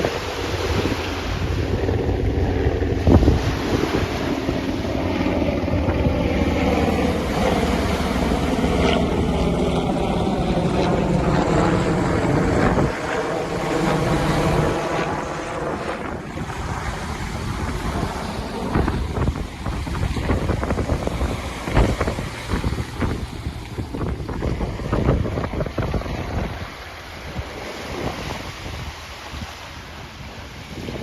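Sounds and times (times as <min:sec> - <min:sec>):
motor droning past: 0:00.0 - 0:26.7
wind on microphone: 0:00.0 - 0:31.0.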